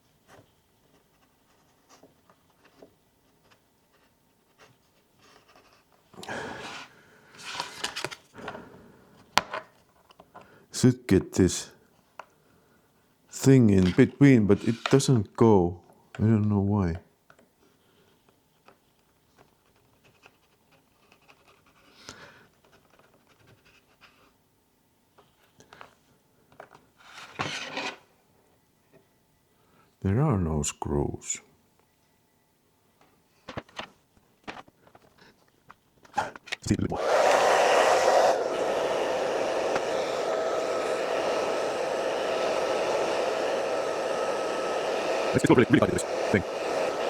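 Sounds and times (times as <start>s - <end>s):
hair dryer blowing: 6.2s - 6.7s, 36.9s - 47.0s
tool scratching and ticking: 39.6s - 47.0s.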